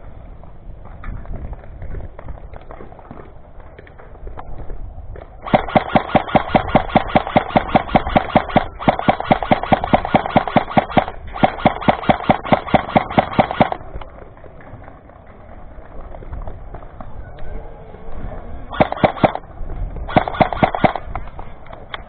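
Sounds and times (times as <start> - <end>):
airsoft rifle rapid fire: 5.4 - 14.0, 18.7 - 19.4, 20.1 - 21.2.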